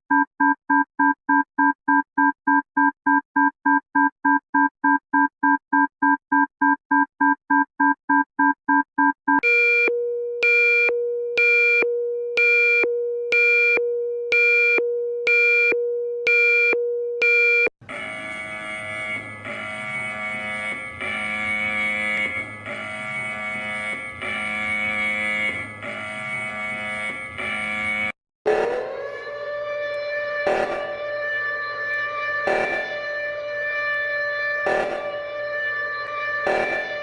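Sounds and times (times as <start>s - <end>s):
harsh buzzy alarm tone: 17.8s - 37.0s
pulsing three-tone chord: 28.5s - 37.0s.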